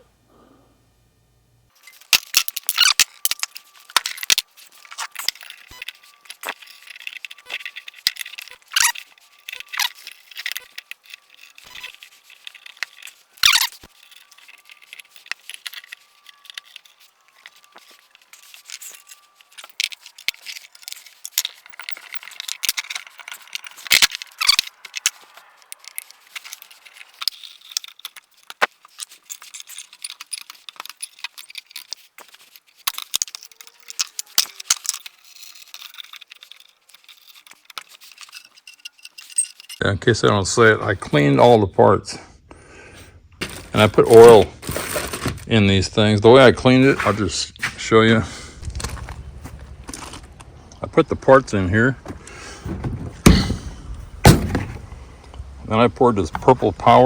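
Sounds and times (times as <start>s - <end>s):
metal engine parts clinking: 1.7s - 39.8s, 43.4s - 45.6s, 52.0s - 57.0s.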